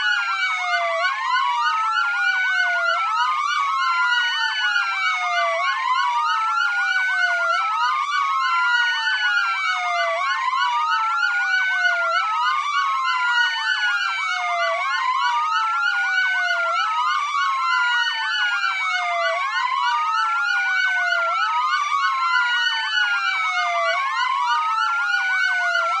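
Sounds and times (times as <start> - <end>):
police sirens wailing: 0.0 - 26.0.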